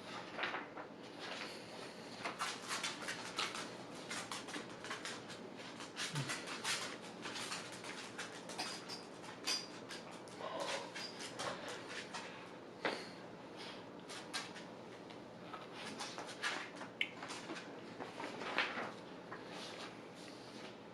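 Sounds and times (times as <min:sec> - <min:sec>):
wet chewing and lip smacks: 0:17.0 - 0:17.3.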